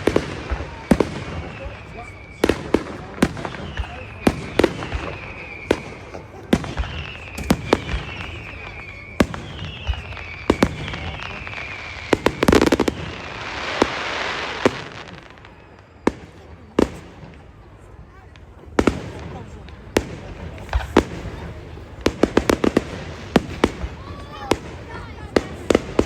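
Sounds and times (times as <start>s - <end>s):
falling firework whistles: 0.0s - 17.1s
crackling firework fizz: 0.0s - 26.0s.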